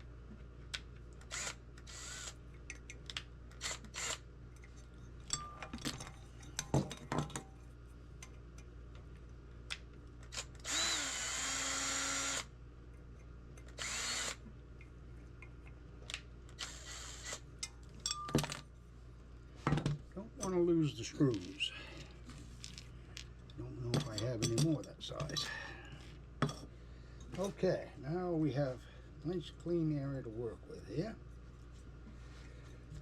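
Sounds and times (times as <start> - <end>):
power drill whining: 1.3 - 2.4, 3.6 - 4.2, 10.3 - 12.5, 13.8 - 14.4, 16.6 - 17.4.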